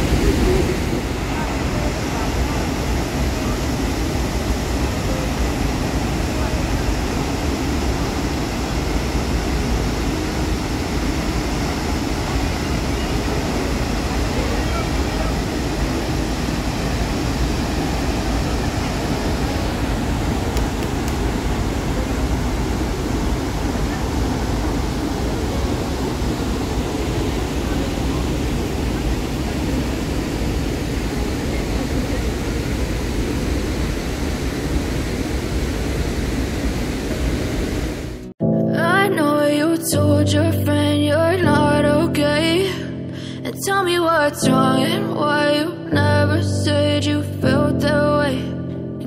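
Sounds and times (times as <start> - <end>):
waterfall rushing: 0.0 - 38.3.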